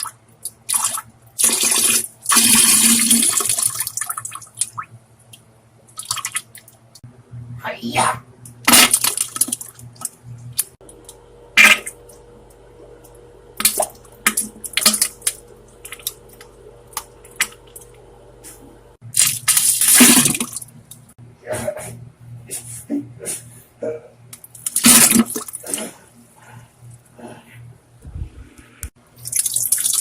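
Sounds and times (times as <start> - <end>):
wet splattering farts: 19.2 - 20.6, 24.6 - 26.0.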